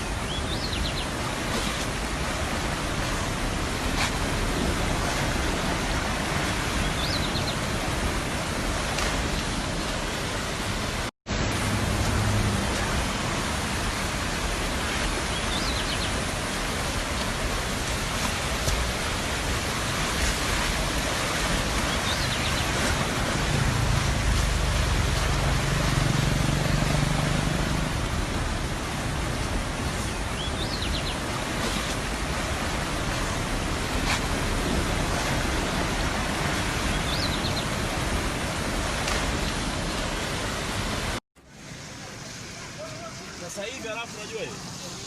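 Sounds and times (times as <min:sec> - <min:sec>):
floodwater rushing: 0:00.0 - 0:45.0
low vehicle engine hum: 0:22.6 - 0:29.2.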